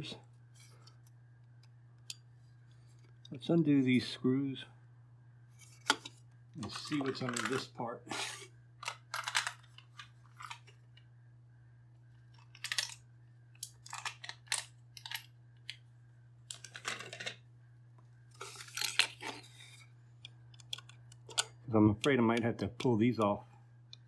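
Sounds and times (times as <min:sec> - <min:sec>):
steady low hum: 0:00.0 - 0:24.0.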